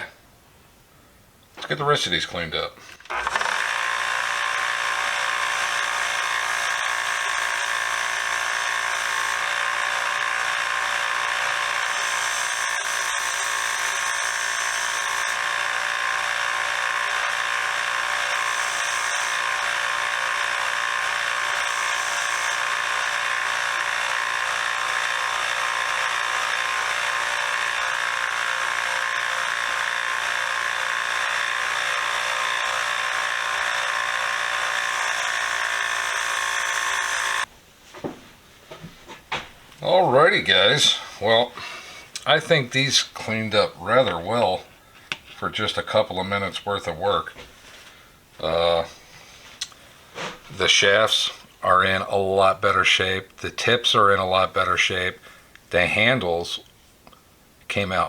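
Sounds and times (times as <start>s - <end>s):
power tool motor whining: 2.8s - 37.5s.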